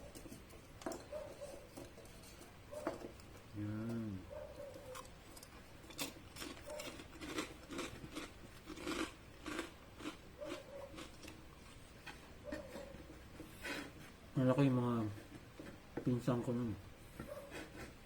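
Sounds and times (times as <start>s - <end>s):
crunchy chewing: 0.0s - 14.0s.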